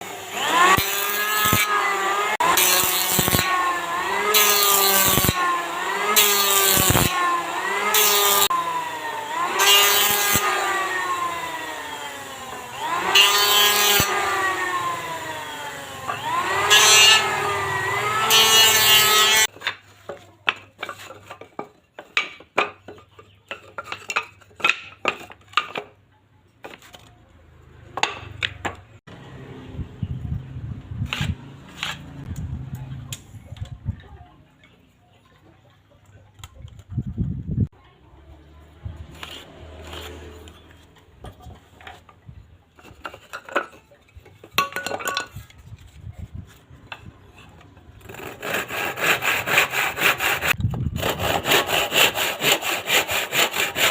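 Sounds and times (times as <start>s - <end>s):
hand saw cutting: 0.0s - 19.8s, 31.1s - 32.3s, 39.1s - 40.6s, 47.4s - 53.9s.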